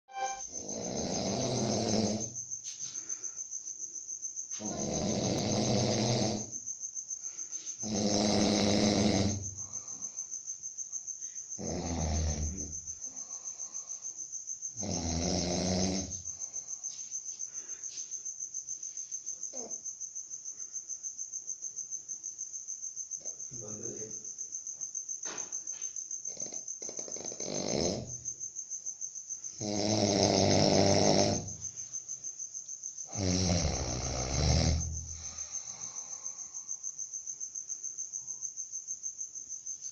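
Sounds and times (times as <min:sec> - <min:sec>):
man snoring: 0:00.1 - 0:02.3, 0:04.6 - 0:06.5, 0:07.8 - 0:10.0, 0:11.6 - 0:12.8, 0:14.8 - 0:16.2, 0:26.3 - 0:28.1, 0:29.6 - 0:31.6, 0:33.1 - 0:36.5
crickets chirping: 0:00.1 - 0:39.9.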